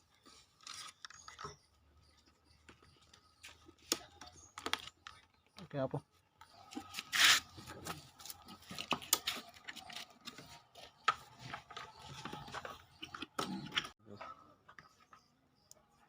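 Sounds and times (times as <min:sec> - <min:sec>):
plastic parts scraping and clicking: 0:06.6 - 0:14.0.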